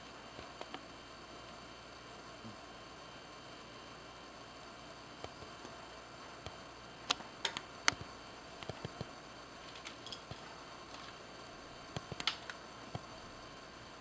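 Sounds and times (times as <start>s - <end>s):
faint steady hiss: 0.0s - 14.0s
sharp clicks and ticks: 6.4s - 9.1s, 11.9s - 13.1s.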